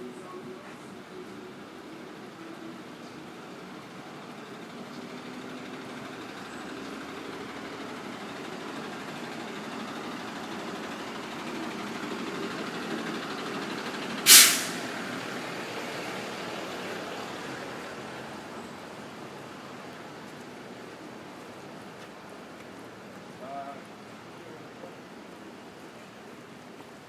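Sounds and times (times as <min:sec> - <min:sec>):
city street traffic: 0:00.0 - 0:27.0
air brakes hissing: 0:14.2 - 0:15.1.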